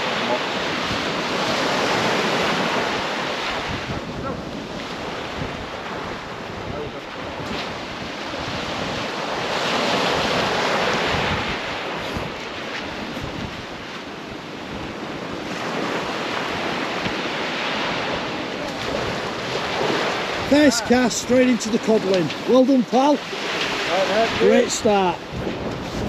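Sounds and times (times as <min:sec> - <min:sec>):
surf breaking on beach: 0:00.0 - 0:26.0
wind buffeting microphone: 0:00.0 - 0:26.0.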